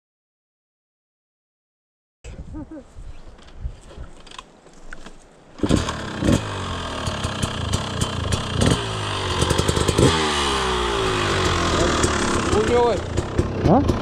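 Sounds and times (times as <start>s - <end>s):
dirt bike engine revving: 5.6s - 14.0s.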